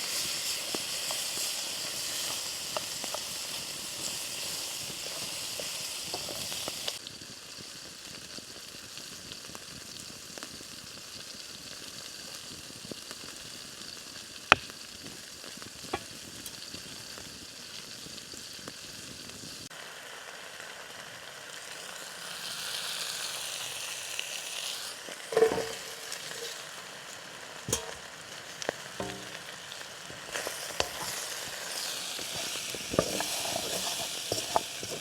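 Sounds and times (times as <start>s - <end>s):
food sizzling in a pan: 0.0s - 35.0s
sharp knocks and clinks: 25.3s - 26.6s, 27.7s - 28.1s, 29.0s - 29.5s.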